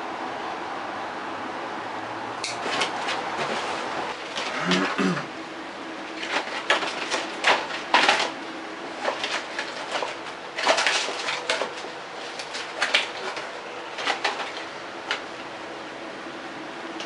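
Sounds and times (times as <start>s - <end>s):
packaging crinkling and rustling: 2.5s - 5.0s, 6.1s - 15.3s.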